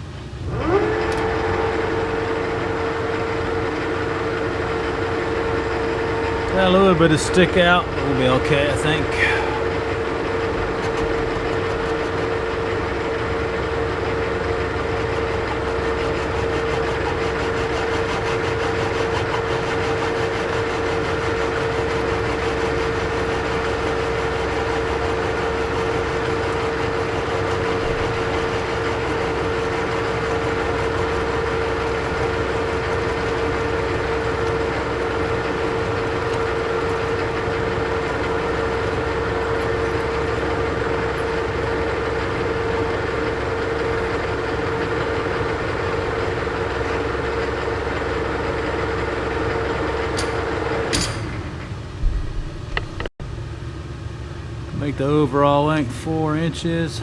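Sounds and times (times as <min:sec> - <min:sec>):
lathe whining and rumbling: 0:00.0 - 0:57.0.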